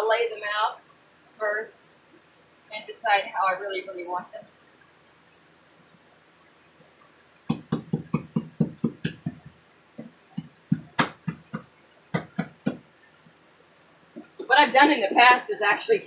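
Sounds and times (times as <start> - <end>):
dull thumps of tiles pressed down: 7.5 - 11.6.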